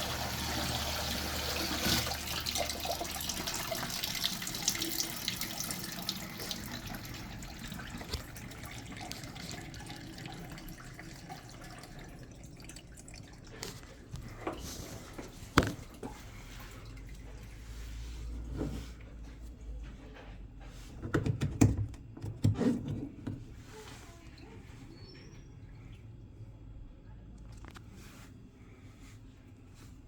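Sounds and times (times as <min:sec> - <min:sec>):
water running and splashing: 0:00.0 - 0:13.3.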